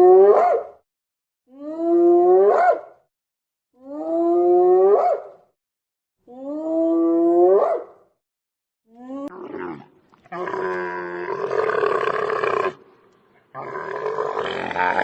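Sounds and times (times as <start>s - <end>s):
animal crying: 13.6s - 15.0s.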